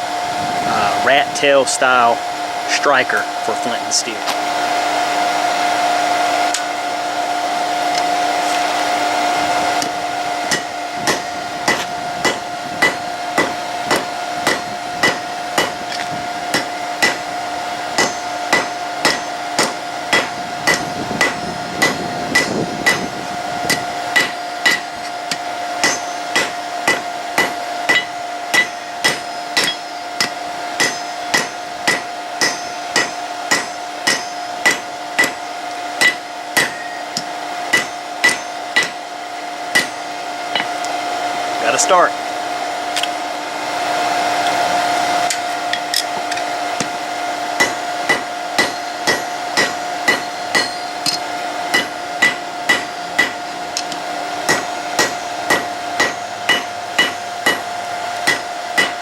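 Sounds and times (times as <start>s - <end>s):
forge air blower hum and hiss: 0.0s - 59.0s
hammer striking steel on anvil: 10.5s - 17.3s, 18.0s - 23.1s, 23.7s - 39.0s, 39.7s - 40.8s, 47.6s - 53.9s, 54.5s - 59.0s.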